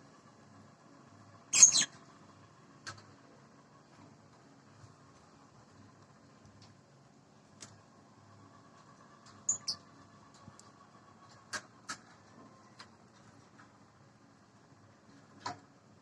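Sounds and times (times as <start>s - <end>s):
faint steady hum: 0.0s - 16.0s
small animal squeaks: 1.5s - 1.9s, 9.4s - 9.9s.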